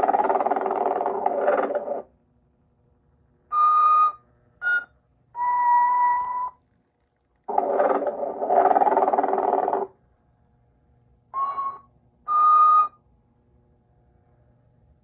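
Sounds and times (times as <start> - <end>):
loud raspy snore: 0.0 - 2.0, 7.5 - 9.9
toy whistling steady notes: 3.5 - 6.6, 11.4 - 13.0.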